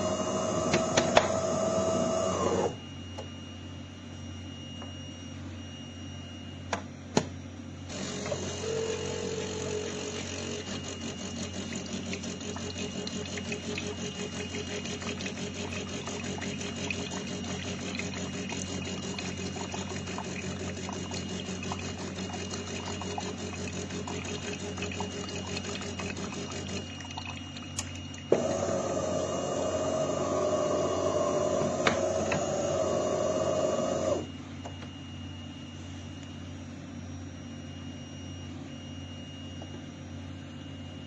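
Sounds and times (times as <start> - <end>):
espresso machine pump buzzing: 0.0 - 2.8, 7.9 - 34.6
high-pitched machine running: 7.9 - 34.3.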